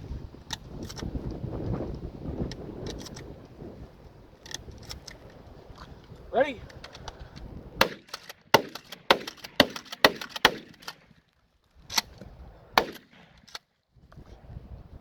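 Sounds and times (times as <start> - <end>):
shotgun firing: 7.8 - 11.0, 12.8 - 13.3.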